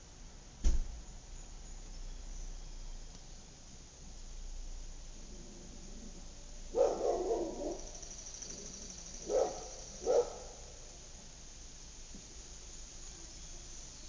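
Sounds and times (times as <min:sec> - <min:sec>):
dog barking: 0:06.7 - 0:07.9, 0:09.2 - 0:10.7.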